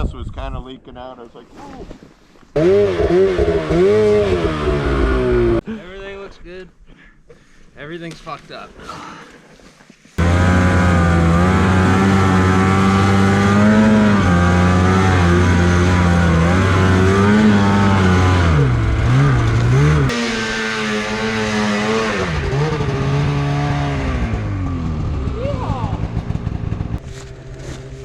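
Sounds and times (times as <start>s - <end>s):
snowmobile engine revving: 2.6s - 5.6s, 10.2s - 28.0s.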